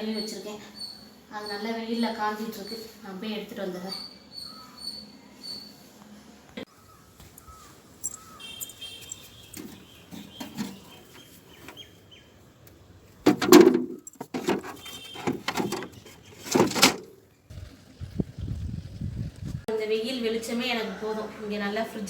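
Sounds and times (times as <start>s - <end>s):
birds chirping: 0.0s - 5.9s, 6.6s - 13.2s, 13.9s - 17.7s
objects knocking and clattering: 9.5s - 11.0s, 13.2s - 17.2s.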